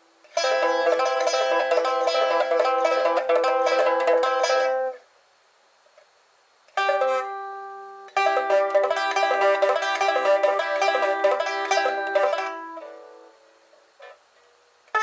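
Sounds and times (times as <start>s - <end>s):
fast plucked lute notes: 0.3s - 5.0s, 6.8s - 7.4s, 8.1s - 13.3s
ringing plucked chord: 6.8s - 13.3s.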